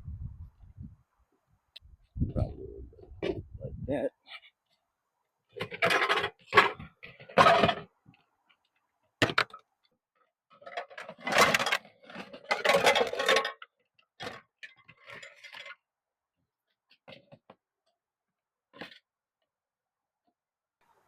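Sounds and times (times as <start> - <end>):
items rustling and clattering: 5.5 - 9.6, 10.5 - 15.9, 16.7 - 17.6.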